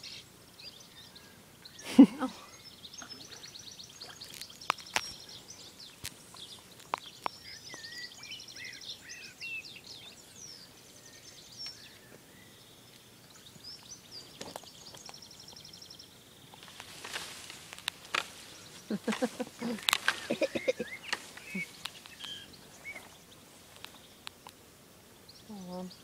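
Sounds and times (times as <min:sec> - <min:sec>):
songbirds singing: 0:00.0 - 0:26.0
sharp clicks: 0:16.5 - 0:22.4.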